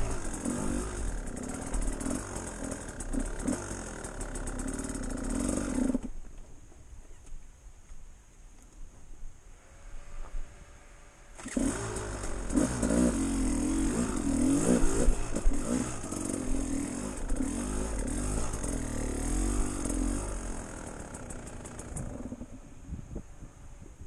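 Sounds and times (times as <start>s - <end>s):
dirt bike engine revving: 0.0s - 6.1s, 11.4s - 22.5s.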